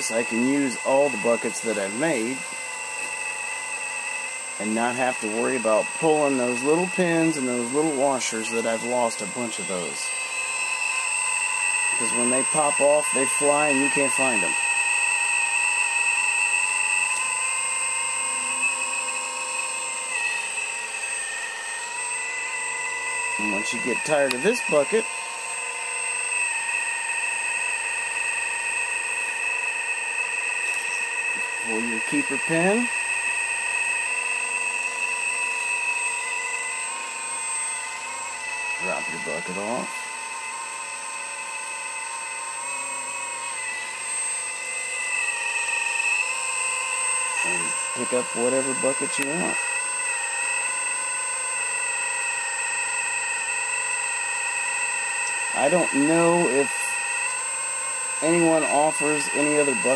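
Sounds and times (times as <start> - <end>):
hydraulic pump whining: 0.0 - 59.9.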